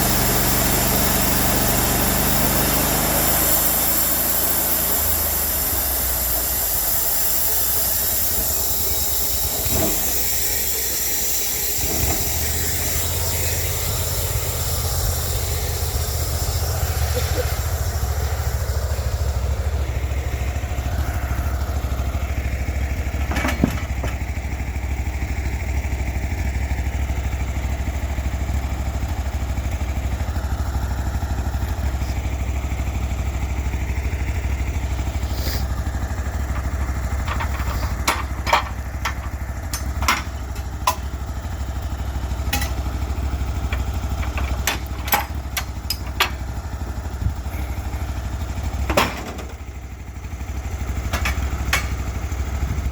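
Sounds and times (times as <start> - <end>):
sawmill engine droning: 0.0 - 52.9
sharp knocks and clicks: 51.1 - 52.0.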